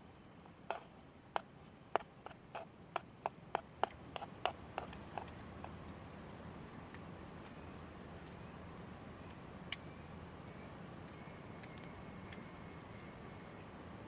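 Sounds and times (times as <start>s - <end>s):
light sharp clicks and knocks: 0.5s - 6.2s.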